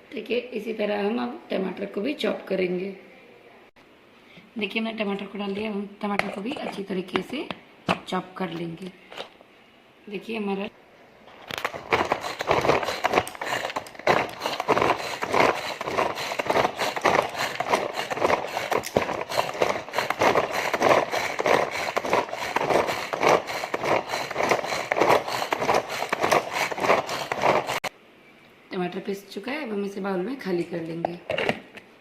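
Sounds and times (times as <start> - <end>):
kitchen chopper blades clattering: 11.6 - 27.9.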